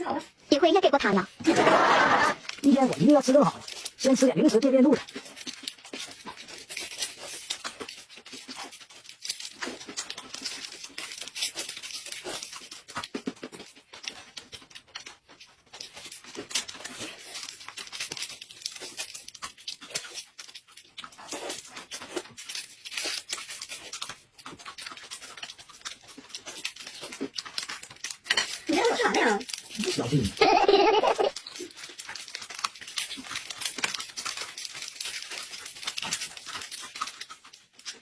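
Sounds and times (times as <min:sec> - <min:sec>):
person crunching and chewing: 0:00.0 - 0:38.0
snack packaging crinkling: 0:00.0 - 0:38.0.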